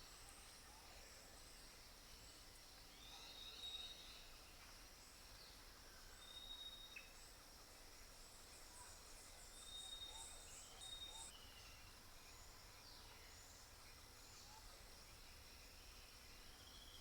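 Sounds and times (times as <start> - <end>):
bird song: 8.6 - 17.0.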